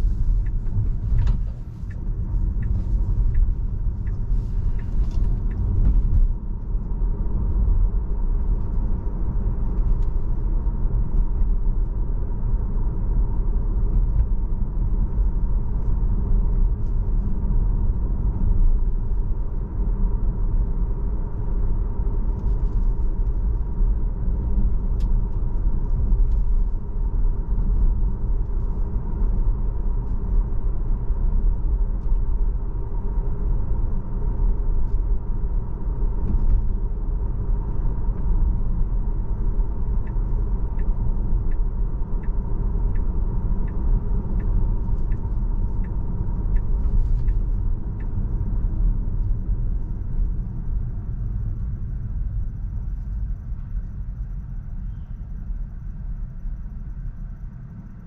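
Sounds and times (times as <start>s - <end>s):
road and tyre rumble: 0.0s - 58.0s
turn signal ticking: 0.2s - 6.1s, 39.8s - 48.6s.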